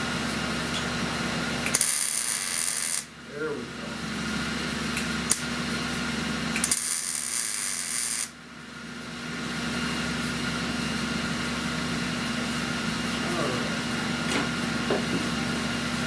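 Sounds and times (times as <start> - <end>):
welding crackling hiss: 0.0 - 8.4
welding equipment hum: 0.0 - 16.0.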